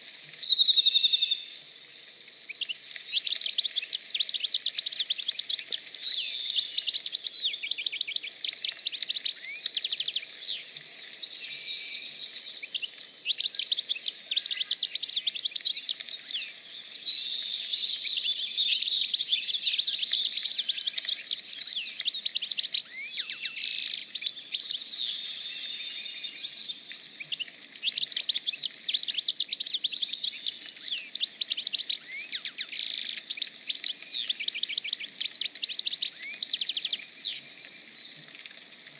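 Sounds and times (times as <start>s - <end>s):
small birds chirping: 0.0s - 38.9s.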